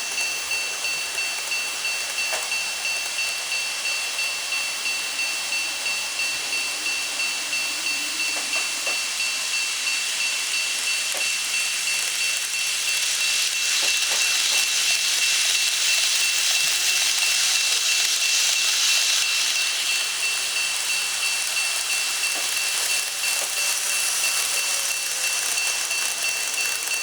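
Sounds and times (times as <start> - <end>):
level-crossing alarm ringing: 0.0 - 27.0
model train running on track: 0.0 - 27.0.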